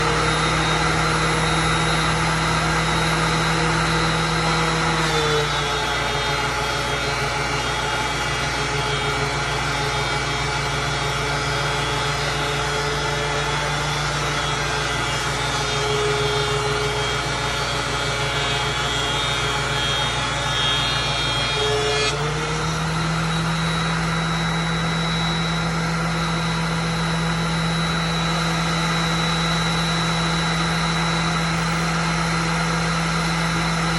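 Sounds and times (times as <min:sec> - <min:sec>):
thickness planer running: 0:00.0 - 0:33.9.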